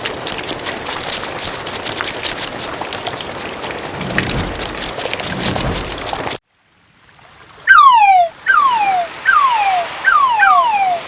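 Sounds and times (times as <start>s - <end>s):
low rumbling swells: 3.8s - 6.3s.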